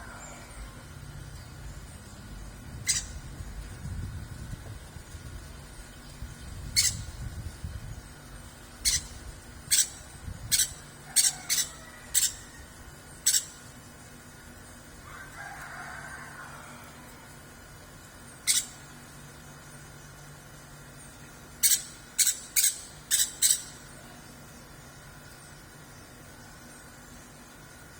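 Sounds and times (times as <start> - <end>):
rooster crowing: 0.0 - 1.0, 11.0 - 12.8, 15.0 - 17.3.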